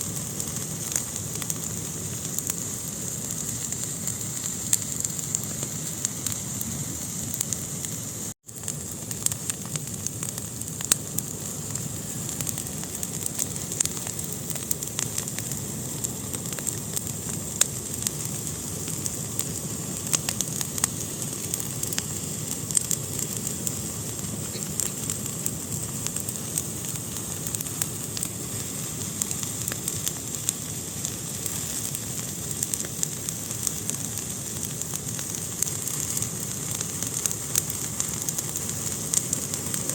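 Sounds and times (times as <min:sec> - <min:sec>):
fire crackling in fireplace: 0:00.0 - 0:39.9.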